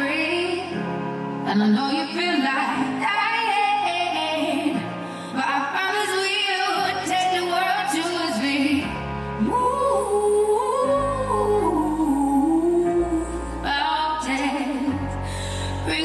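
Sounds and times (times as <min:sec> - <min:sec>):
person singing with vibrato: 0:00.0 - 0:16.0
slow bass notes: 0:08.8 - 0:16.0.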